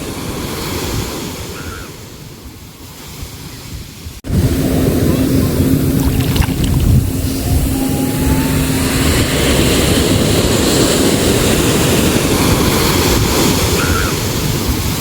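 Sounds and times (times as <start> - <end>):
sea waves washing: 0.0 - 15.0
wind buffeting microphone: 0.0 - 15.0
low hum: 4.3 - 12.2.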